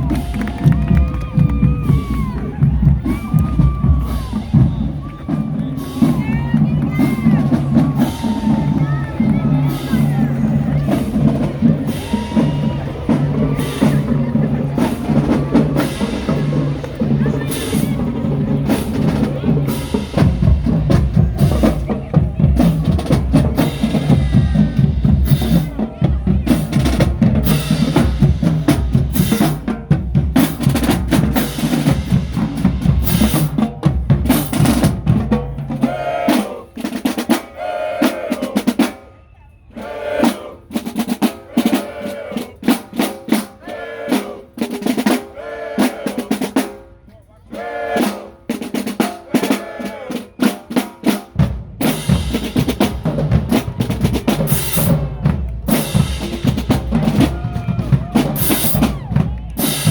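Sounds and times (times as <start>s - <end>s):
bass drums: 0.0s - 35.9s, 51.3s - 59.9s
snare drums: 0.0s - 39.1s, 39.8s - 59.9s.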